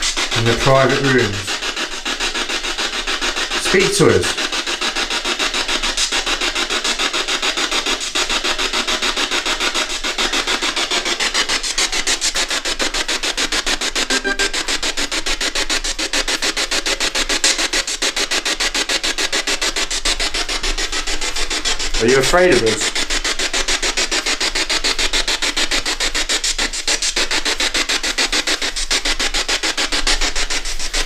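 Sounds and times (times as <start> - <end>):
pulsing radio static: 0.4 - 1.5, 14.1 - 14.7, 22.0 - 22.9.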